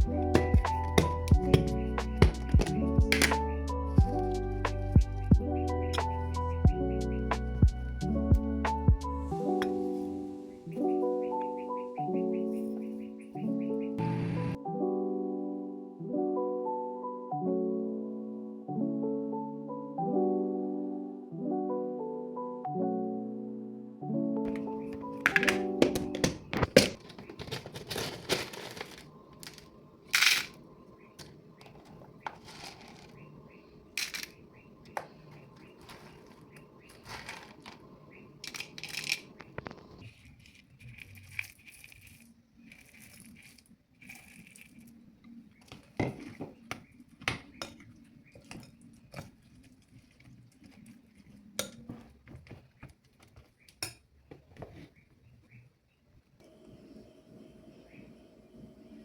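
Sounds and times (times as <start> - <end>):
packets crinkling: 24.5 - 30.6, 31.8 - 33.2, 35.1 - 45.1.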